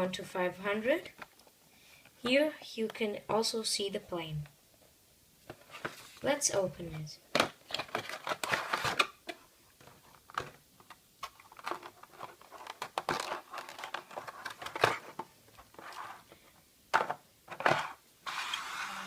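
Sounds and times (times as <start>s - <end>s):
packaging crinkling and rustling: 7.3s - 16.4s.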